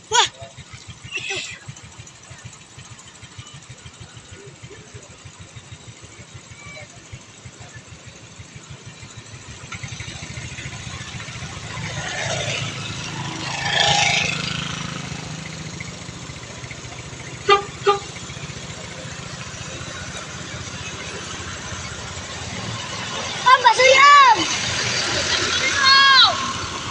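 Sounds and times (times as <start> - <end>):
traffic engine rumble: 0.0 - 26.9
vehicle passing close: 9.2 - 26.9
short horn toots: 17.4 - 18.2.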